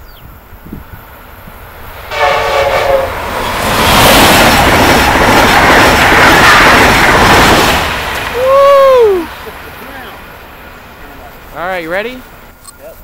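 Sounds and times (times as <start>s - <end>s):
train rushing past: 0.3s - 12.6s
train air horn blast: 2.1s - 3.3s.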